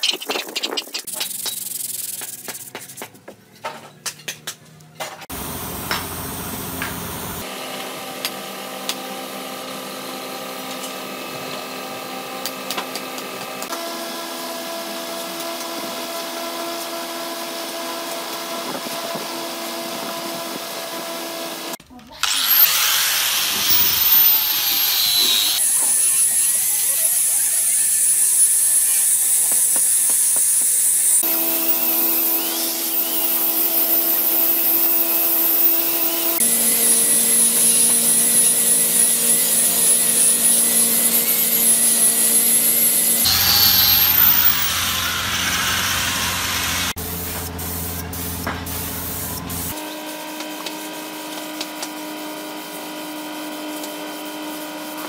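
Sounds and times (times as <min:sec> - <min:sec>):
small power tool whining: 0:05.4 - 0:47.0.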